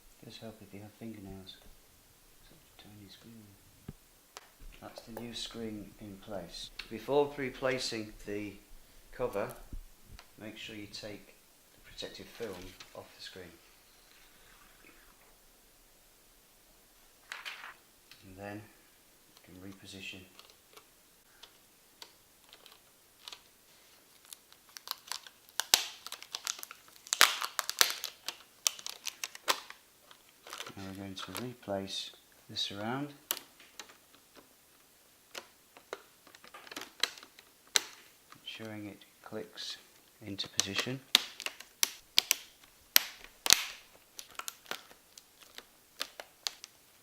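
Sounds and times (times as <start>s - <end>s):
plastic parts crinkling and clicking: 11.8s - 13.5s, 19.3s - 31.6s, 33.1s - 38.8s, 39.9s - 47.0s.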